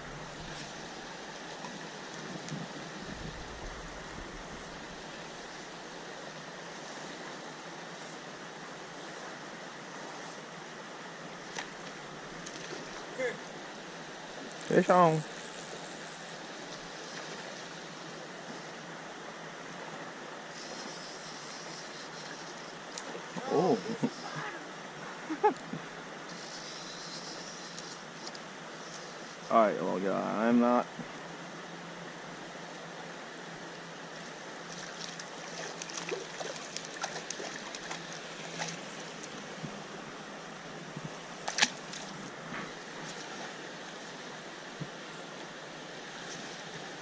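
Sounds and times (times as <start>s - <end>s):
stream water flowing over riffles: 0.0s - 47.0s.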